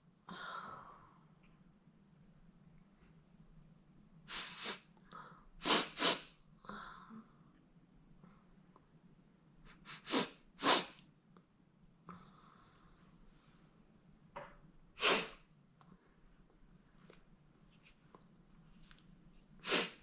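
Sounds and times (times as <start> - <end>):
breaths: 0.3 - 1.2, 4.3 - 5.6, 6.6 - 7.5, 12.1 - 13.8.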